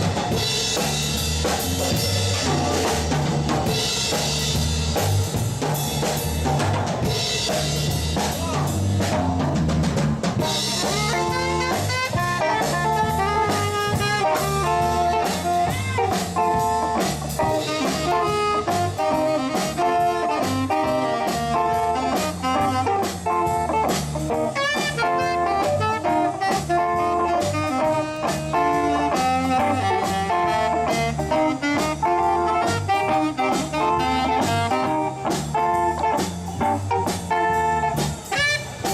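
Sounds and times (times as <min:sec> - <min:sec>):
bass and guitar: 0:00.0 - 0:38.9
drum kit with cymbals: 0:00.0 - 0:38.9
lead instrument melody: 0:10.4 - 0:38.9.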